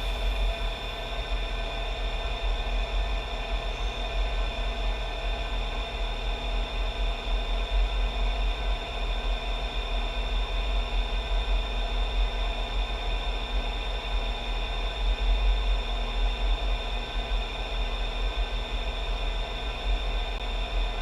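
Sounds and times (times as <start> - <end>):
spindle whine: 0.0 - 3.0.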